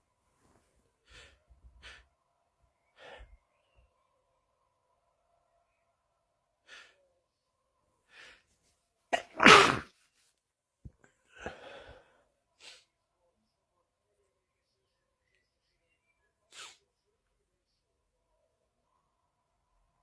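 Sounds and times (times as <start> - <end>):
soft breathy sounds: 0.0 - 4.6, 6.5 - 8.9, 10.9 - 19.0
man sneezing: 9.2 - 9.9.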